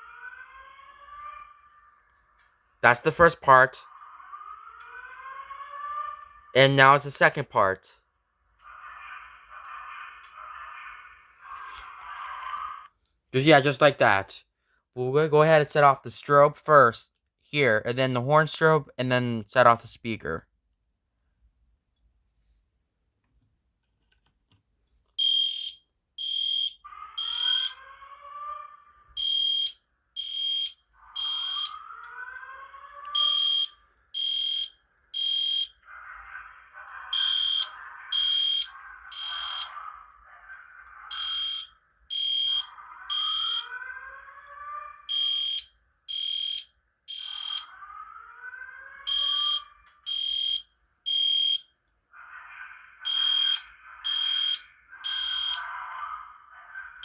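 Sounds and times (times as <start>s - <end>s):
fire alarm high beeps: 25.2s - 27.8s, 29.2s - 31.8s, 33.1s - 35.8s, 37.1s - 39.8s, 41.1s - 43.7s, 45.1s - 47.7s, 49.1s - 51.7s, 53.0s - 55.7s.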